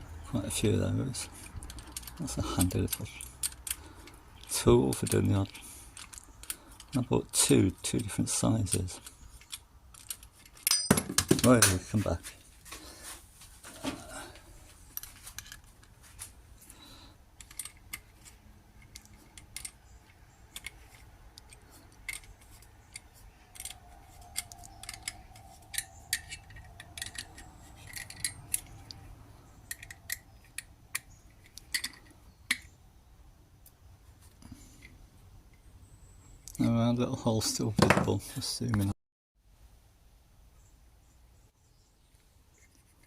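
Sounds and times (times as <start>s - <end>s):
small tools clicking and tapping: 1.3s - 11.8s, 17.4s - 32.7s.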